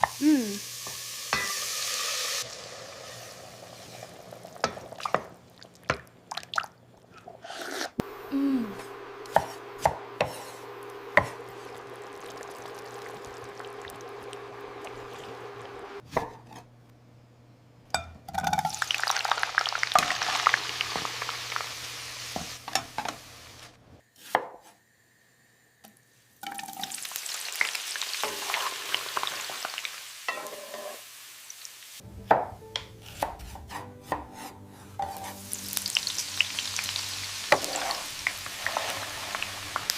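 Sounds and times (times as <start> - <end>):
food sizzling in a pan: 0.0 - 6.0, 7.5 - 16.0, 18.4 - 32.6, 33.6 - 39.9
utensils clinking against pots: 1.3 - 1.7
steady hum: 8.0 - 16.0.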